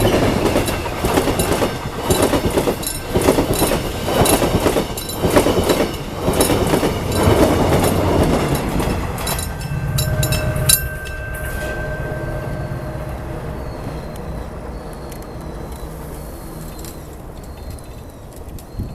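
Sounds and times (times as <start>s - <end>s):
train wheels clacking over rail joints: 0.0s - 11.2s
low train rumble: 0.0s - 18.9s.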